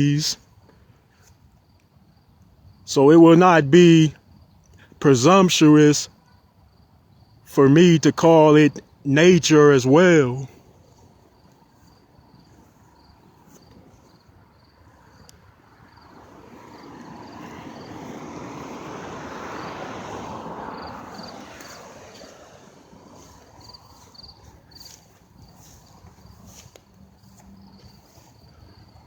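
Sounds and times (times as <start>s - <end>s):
insects chirping: 0.0s - 29.0s
vehicle passing: 12.5s - 29.0s.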